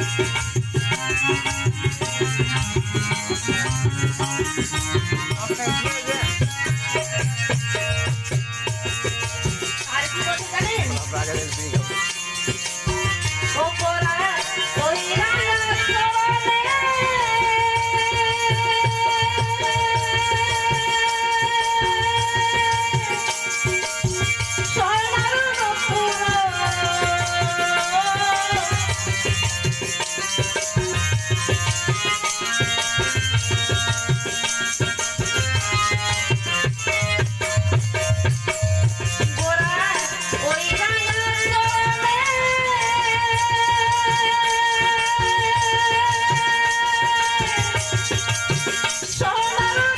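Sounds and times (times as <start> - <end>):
steady drum beat: 0.0 - 17.4
folk song over sound system: 0.0 - 49.9.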